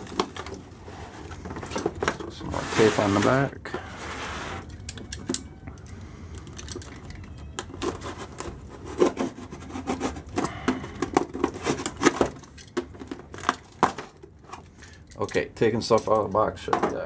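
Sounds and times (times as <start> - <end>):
cardboard rubbing and scraping: 2.4 - 4.7, 7.8 - 10.4.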